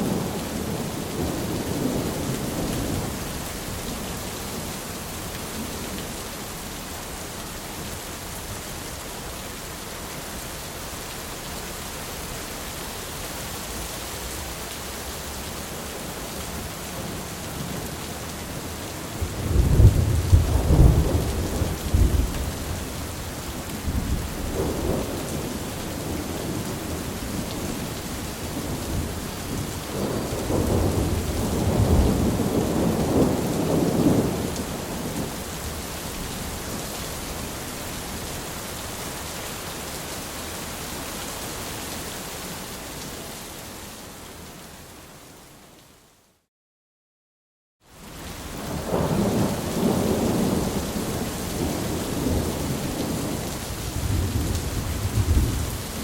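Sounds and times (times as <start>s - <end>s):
steady rain: 0.0s - 46.5s, 47.8s - 56.0s
thunder rolling: 19.4s - 27.8s, 28.6s - 35.3s, 54.0s - 56.0s.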